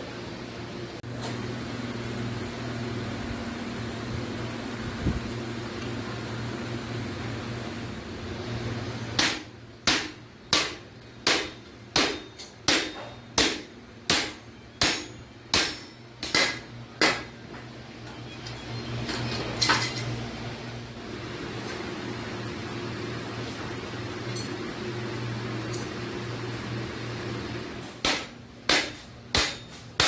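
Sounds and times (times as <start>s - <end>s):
hammer striking iron sheet: 9.2s - 17.4s, 28.0s - 30.0s.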